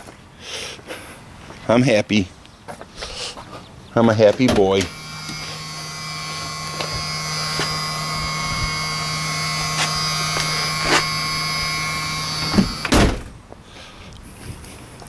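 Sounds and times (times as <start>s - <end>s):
small motor humming and whining: 4.6s - 13.0s.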